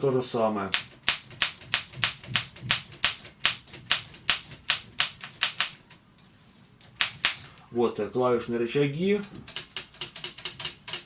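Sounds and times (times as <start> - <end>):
typewriter keys clacking: 0.8 - 6.0, 6.8 - 7.5, 9.3 - 11.0.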